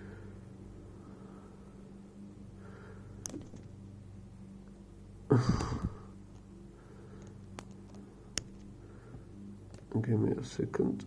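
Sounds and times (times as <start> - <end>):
quiet breathing: 0.0 - 3.9, 5.3 - 9.7
steady low hum: 0.0 - 11.0.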